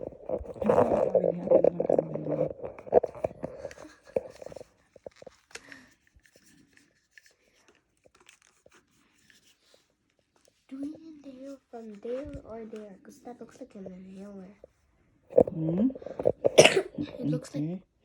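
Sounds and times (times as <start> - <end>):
plastic packaging crinkling and tearing: 0.0 - 9.3.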